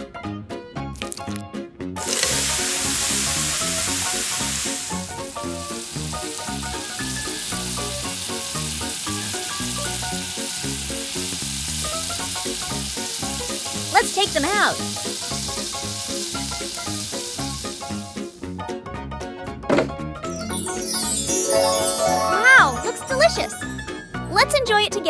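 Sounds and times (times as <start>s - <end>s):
oil sizzling while deep-frying: 1.0s - 1.4s, 2.0s - 18.6s.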